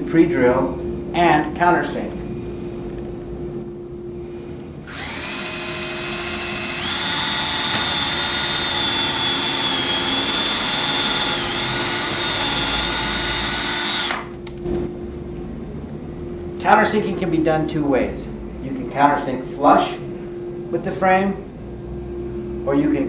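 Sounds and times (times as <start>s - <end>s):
power drill motor whine: 4.8s - 14.5s.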